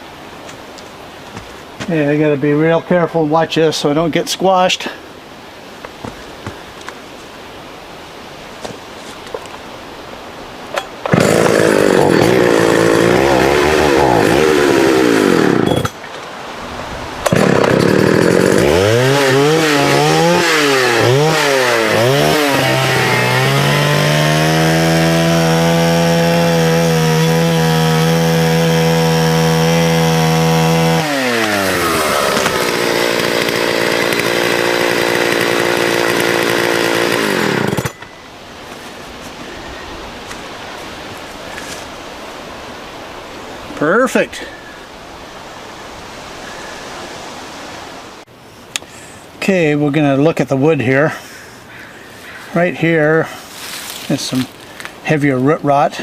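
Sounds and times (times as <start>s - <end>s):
chainsaw cutting tree: 11.0s - 16.0s, 17.2s - 38.1s.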